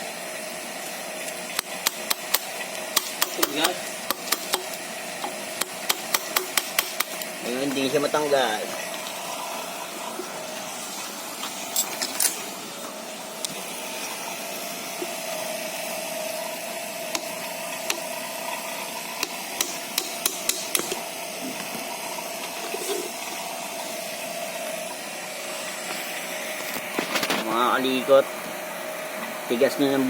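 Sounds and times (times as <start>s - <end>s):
sharp metallic clicks: 1.6s - 4.7s, 19.2s - 21.0s.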